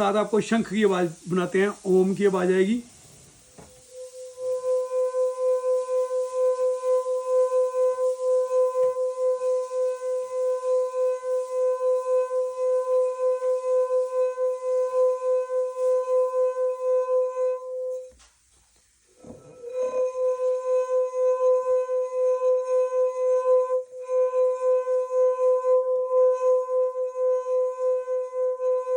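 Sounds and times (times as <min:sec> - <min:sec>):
singing glass ringing tone: 0:03.7 - 0:18.2, 0:19.2 - 0:28.9.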